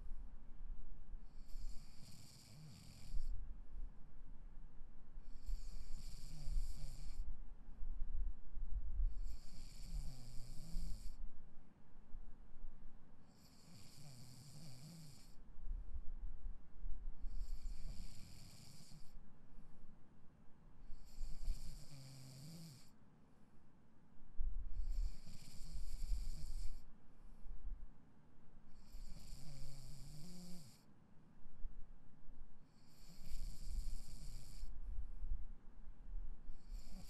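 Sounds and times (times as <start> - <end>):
person snoring: 1.4 - 3.3, 5.3 - 7.2, 9.3 - 11.2, 13.4 - 15.4, 17.3 - 19.1, 21.0 - 22.9, 24.9 - 26.8, 28.8 - 30.8, 32.8 - 34.7.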